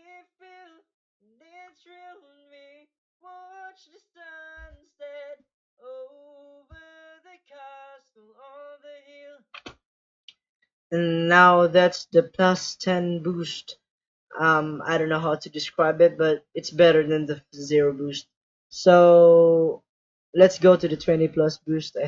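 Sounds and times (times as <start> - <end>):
man singing unaccompanied: 0.0 - 0.8, 1.5 - 6.1.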